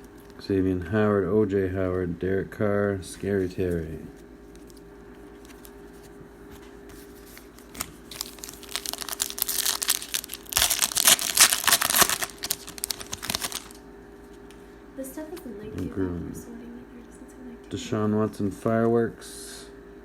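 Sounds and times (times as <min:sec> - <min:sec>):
wrapper crinkling and tearing: 0:07.0 - 0:13.8.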